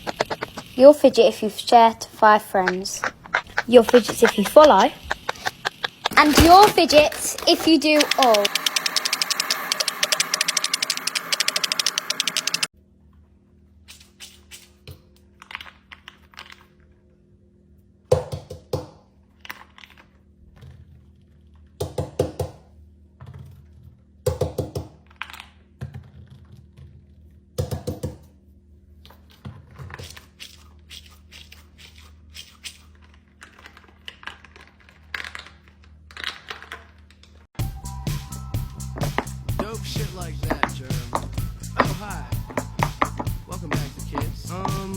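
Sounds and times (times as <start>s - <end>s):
fidget toys clicking and popping: 2.5s - 12.7s.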